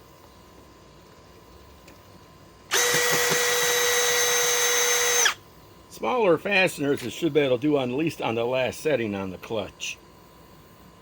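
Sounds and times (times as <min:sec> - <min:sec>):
drill motor whine: 0:02.7 - 0:05.4.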